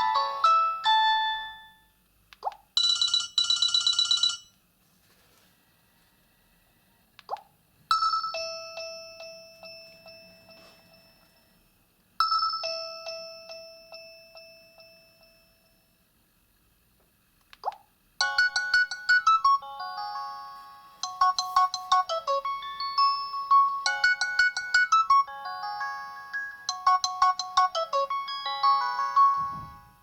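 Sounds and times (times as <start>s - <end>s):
phone ringtone melody: 0.0s - 1.9s, 2.8s - 4.5s, 7.9s - 11.6s, 18.2s - 30.0s.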